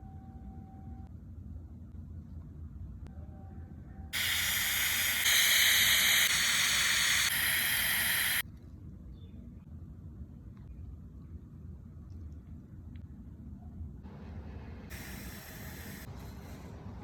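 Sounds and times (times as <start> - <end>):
dental air-water syringe hissing: 4.2 - 8.4, 14.9 - 16.1.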